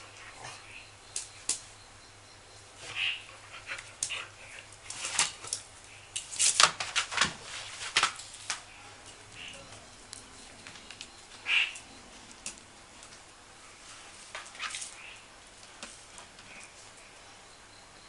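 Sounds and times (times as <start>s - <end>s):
dogs scrabbling and scuffling: 2.8s - 5.7s, 6.3s - 8.7s, 13.9s - 15.0s.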